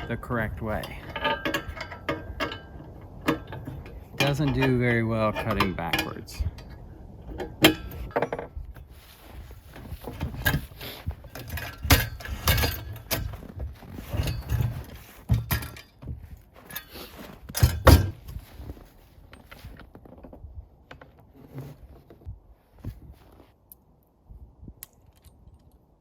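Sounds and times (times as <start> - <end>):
metal clinks and knocks: 0.0 - 8.6, 9.7 - 18.4.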